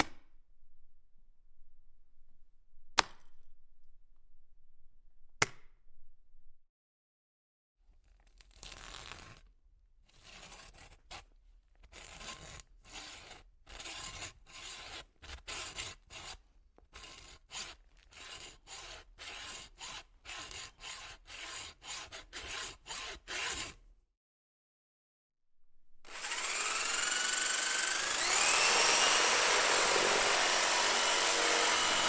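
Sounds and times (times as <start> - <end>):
saw rasping through bone: 10.1 - 23.8, 26.1 - 32.0.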